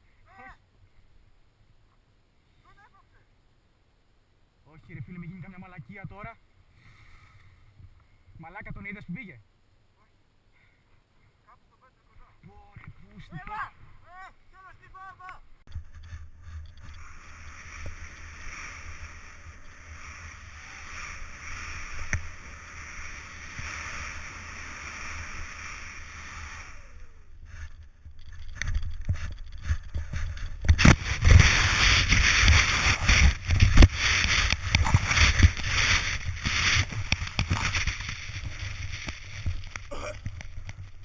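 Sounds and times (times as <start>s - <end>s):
wind and snow hiss: 0.0s - 41.0s
rough rushing with low buffeting: 15.6s - 41.0s.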